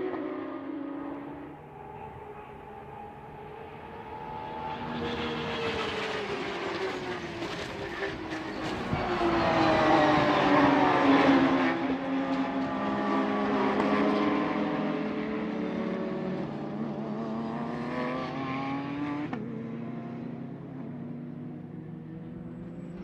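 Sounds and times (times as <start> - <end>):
race car engines: 0.0 - 23.0.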